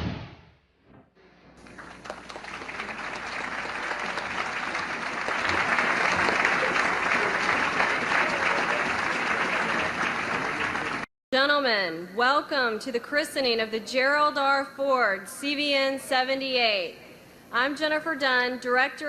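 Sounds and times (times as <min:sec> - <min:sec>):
crowd applauding: 0:01.6 - 0:11.1.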